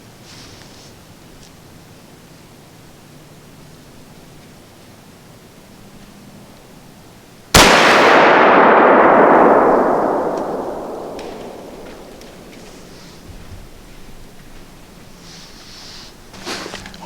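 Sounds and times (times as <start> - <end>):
rifle shot with echo: 7.6 - 13.3.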